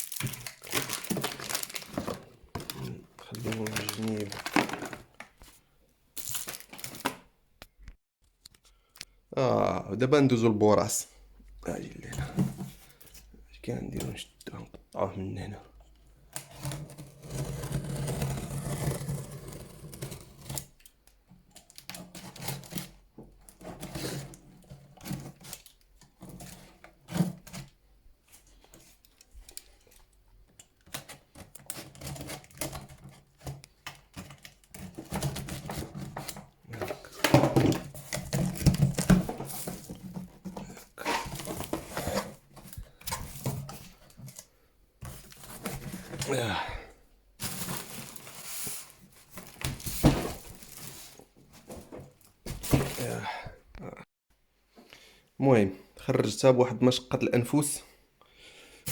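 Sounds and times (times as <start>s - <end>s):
cardboard tearing: 0.0s - 5.0s, 16.5s - 20.7s, 37.8s - 43.6s, 47.4s - 51.2s
cardboard scraping and rustling: 0.2s - 5.6s, 16.4s - 20.7s, 31.0s - 46.4s, 47.4s - 53.2s.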